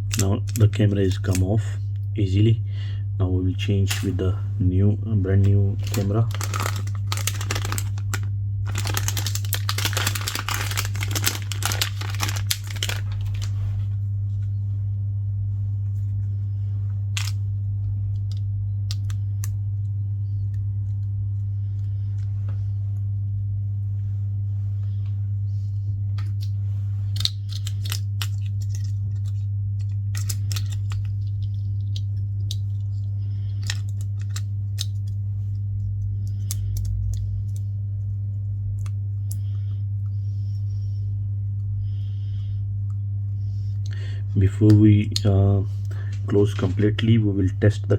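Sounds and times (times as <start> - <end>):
steady low hum: 0.0 - 47.9
crinkling and rustling: 5.3 - 14.5.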